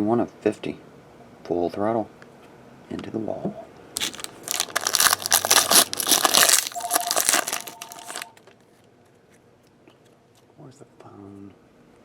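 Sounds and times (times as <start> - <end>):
foil wrappers crinkling: 4.0 - 8.6.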